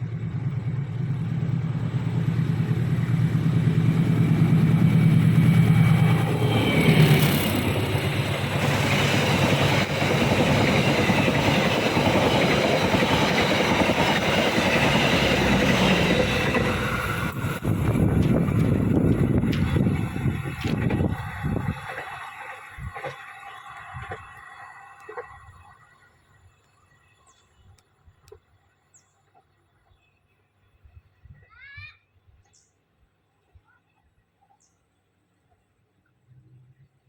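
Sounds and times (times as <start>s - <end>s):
diesel locomotive engine hum: 0.0s - 29.8s
carriages rolling on rails: 0.1s - 27.4s.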